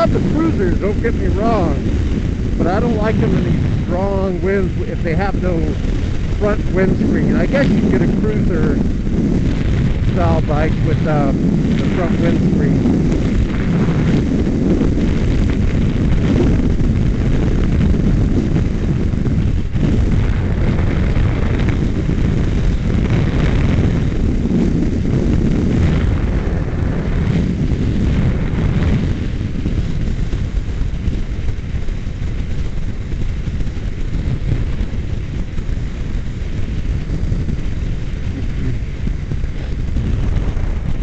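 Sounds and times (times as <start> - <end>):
road noise: 0.0 - 25.1
wind buffeting microphone: 0.0 - 41.0.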